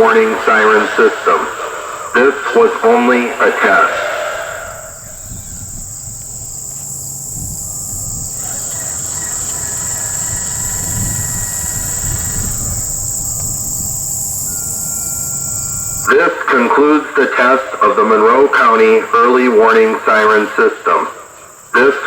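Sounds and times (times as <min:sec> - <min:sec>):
insects buzzing: 0:00.0 - 0:22.0
low rumble: 0:04.6 - 0:16.1
pulsing trill: 0:04.6 - 0:16.1.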